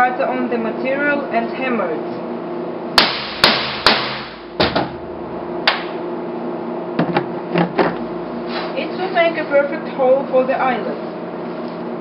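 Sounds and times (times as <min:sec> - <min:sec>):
hammer striking hole cutter: 0:03.0 - 0:04.9.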